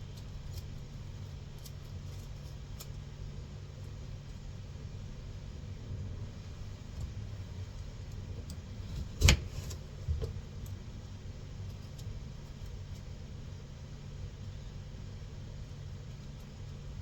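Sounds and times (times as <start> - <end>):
washing machine humming: 4.4 - 17.0.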